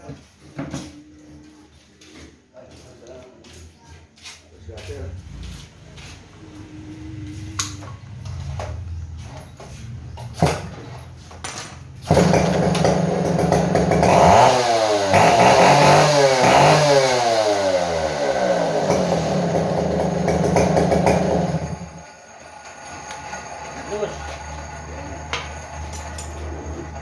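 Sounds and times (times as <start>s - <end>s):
chainsaw engine revving: 12.1s - 22.1s.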